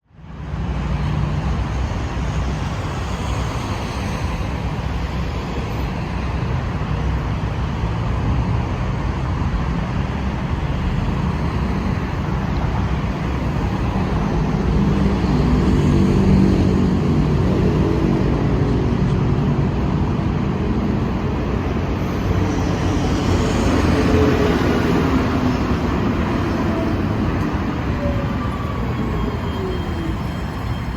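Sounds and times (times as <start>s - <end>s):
tram running rumble: 0.2s - 30.9s
tram motor hum: 10.2s - 30.9s.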